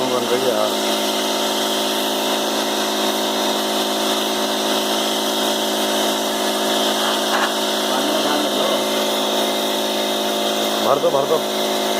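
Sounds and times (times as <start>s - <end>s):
pump motor hum: 0.0s - 11.9s
water spray hissing: 0.7s - 11.1s.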